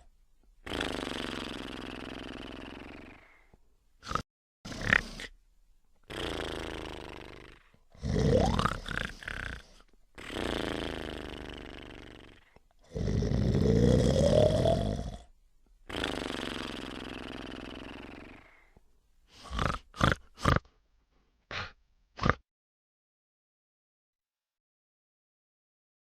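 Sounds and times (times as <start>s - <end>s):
person snoring: 0.6s - 5.4s, 6.0s - 15.3s, 15.9s - 20.7s, 21.5s - 22.4s
short snorts: 0.6s - 5.4s, 6.0s - 15.3s, 15.9s - 20.8s, 21.4s - 22.4s.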